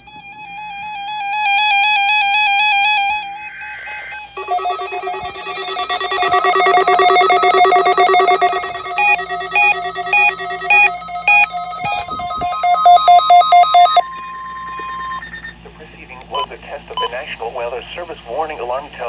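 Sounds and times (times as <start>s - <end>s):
fast warbling beep: 4.4s - 15.6s
rapid trilling beeps: 4.4s - 15.6s
steady alarm tone: 4.4s - 15.6s.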